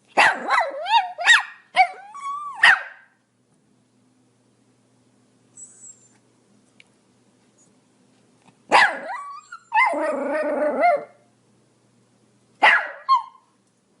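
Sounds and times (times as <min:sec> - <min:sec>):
dog barking: 0:00.2 - 0:02.0, 0:02.6 - 0:03.2, 0:08.7 - 0:09.9, 0:12.6 - 0:13.4.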